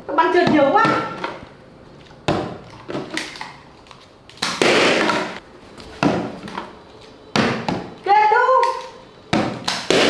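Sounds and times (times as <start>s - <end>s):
balloons popping: 4.4s - 5.4s, 9.4s - 10.0s.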